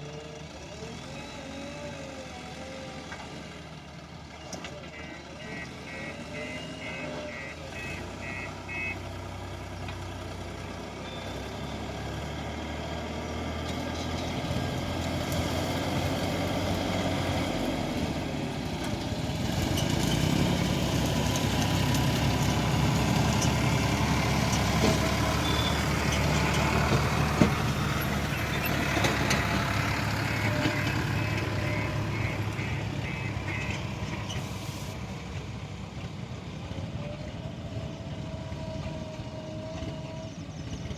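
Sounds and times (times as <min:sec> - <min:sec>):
diesel engines running: 0:00.0 - 0:40.9
reversing alarm beeping: 0:25.4 - 0:25.9.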